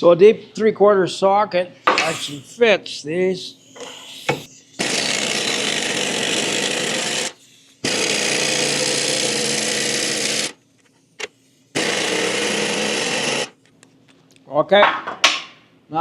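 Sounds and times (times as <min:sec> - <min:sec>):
impact wrench hammering: 0:03.7 - 0:10.6, 0:11.8 - 0:13.5.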